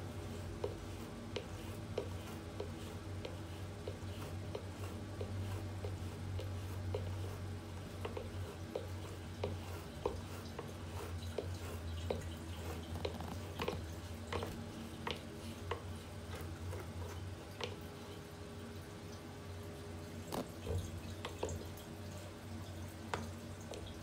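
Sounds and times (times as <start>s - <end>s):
light clicks and taps: 8.0s - 17.9s.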